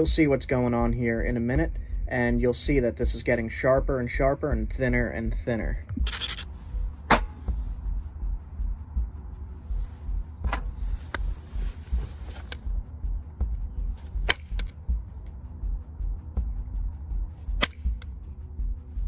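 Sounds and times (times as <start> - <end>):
steady low rumble: 0.0 - 19.0.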